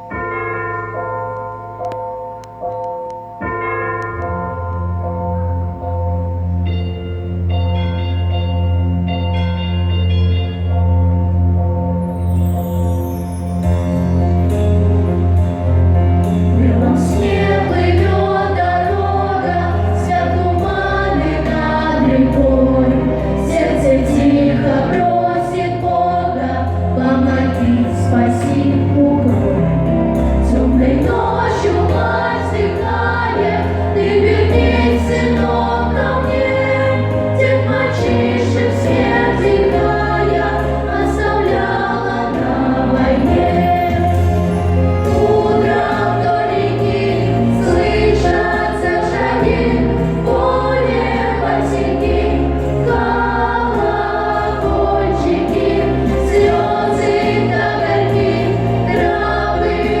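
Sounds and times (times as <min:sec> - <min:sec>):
instrumental accompaniment: 0:00.0 - 1:00.0
steady bass line: 0:13.7 - 1:00.0
choral singing: 0:14.4 - 1:00.0.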